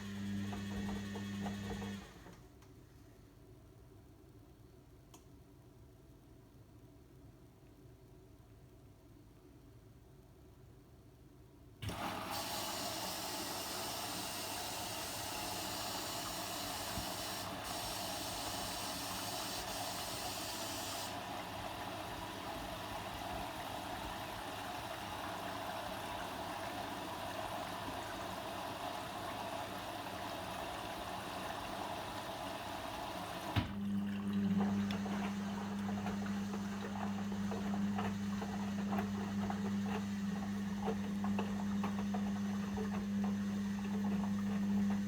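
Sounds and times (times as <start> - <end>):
water hissing into washing machine: 0.0 - 2.3, 11.8 - 45.0
click: 5.1 - 5.3.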